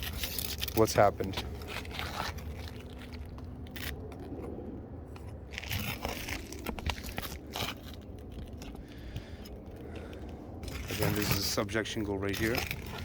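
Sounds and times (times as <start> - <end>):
roof shingles crunching and scraping: 0.0 - 13.0.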